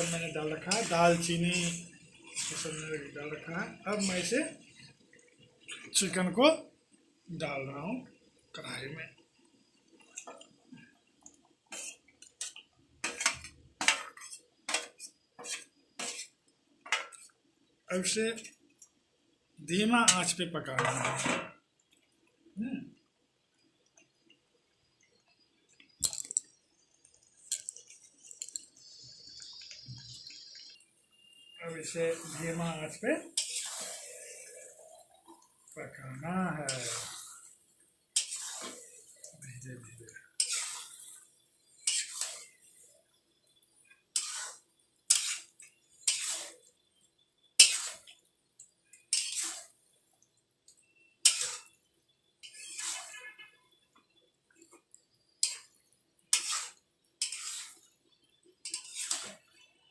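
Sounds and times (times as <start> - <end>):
spatula scraping in a pan: 0.0 - 6.2, 11.7 - 17.4, 18.0 - 18.6, 19.8 - 21.6, 27.5 - 35.4, 36.2 - 50.1, 50.8 - 59.8
chicken sizzling in oil: 0.0 - 21.9, 26.7 - 59.9.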